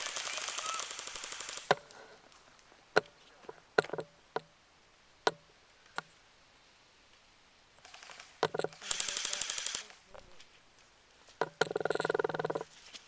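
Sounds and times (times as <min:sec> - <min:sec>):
airsoft gun full-auto burst: 0:00.0 - 0:01.7, 0:07.8 - 0:10.0.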